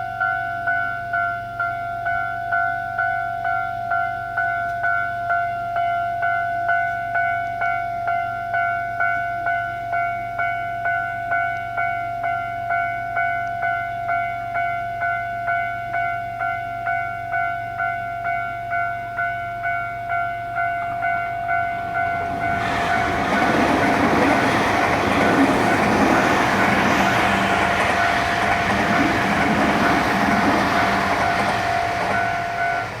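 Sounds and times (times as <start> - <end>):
level crossing warning bell: 0.0 - 33.0
train passing: 19.7 - 33.0.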